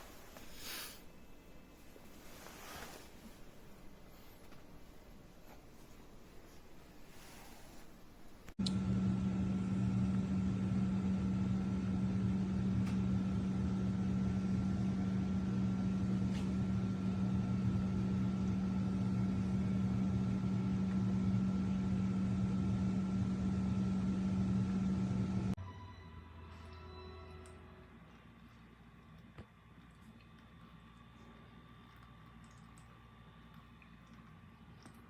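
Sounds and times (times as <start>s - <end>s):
machine hum with high whine: 8.6s - 35.0s.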